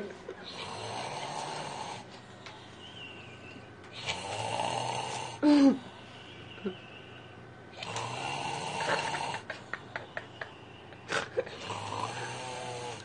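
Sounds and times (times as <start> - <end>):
person snoring: 0.4 - 2.1, 4.0 - 5.8, 7.8 - 9.5, 11.1 - 13.0.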